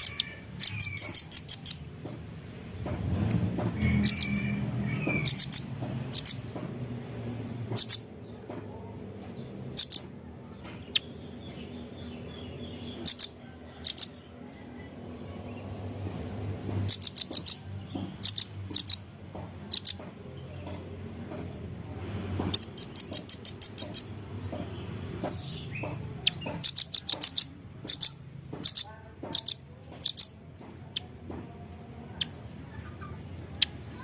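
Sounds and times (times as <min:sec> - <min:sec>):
bird high sharp chips: 0:00.0 - 0:01.9, 0:05.1 - 0:06.4, 0:22.5 - 0:24.1.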